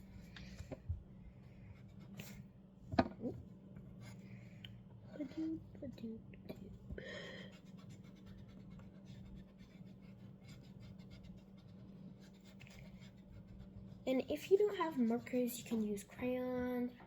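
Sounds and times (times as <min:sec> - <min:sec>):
pencil scratching on paper: 0:01.4 - 0:02.5, 0:07.3 - 0:16.4.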